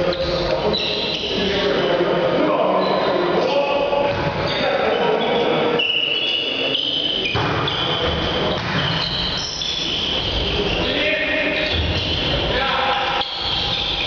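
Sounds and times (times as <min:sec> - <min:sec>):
echoing volleyball play noise: 0:00.0 - 0:14.0
shoe squeaks on court: 0:00.1 - 0:01.6, 0:05.2 - 0:14.0.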